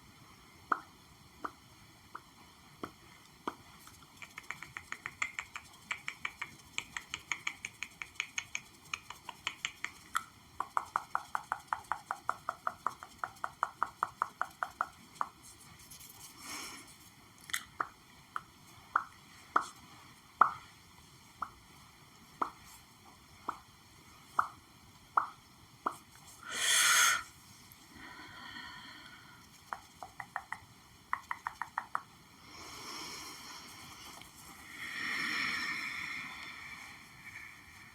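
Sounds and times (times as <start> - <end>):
fingertips tapping on objects: 2.2 - 16.0, 22.4 - 22.7, 29.6 - 32.1.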